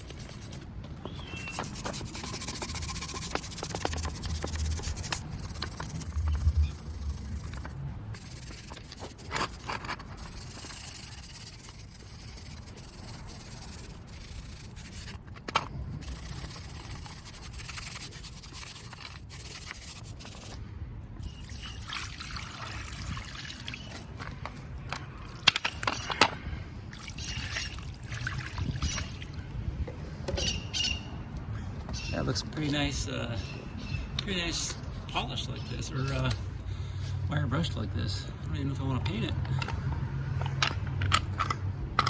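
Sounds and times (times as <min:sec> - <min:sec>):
wire brush scrubbing metal: 0:00.0 - 0:15.3, 0:16.0 - 0:20.6, 0:27.0 - 0:29.3.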